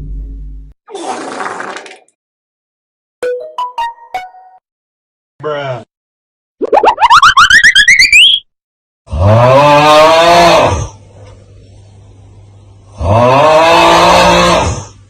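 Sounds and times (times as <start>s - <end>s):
rising pulsing whistle glide: 6.8s - 8.4s.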